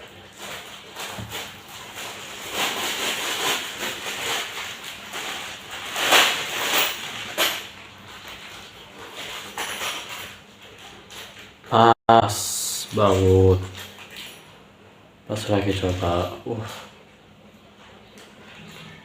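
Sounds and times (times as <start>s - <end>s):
parts scraping and rustling: 0.2s - 11.6s.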